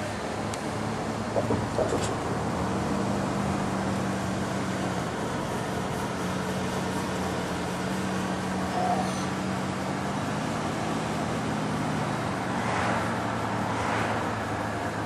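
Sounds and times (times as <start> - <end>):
car driving: 0.0 - 15.0.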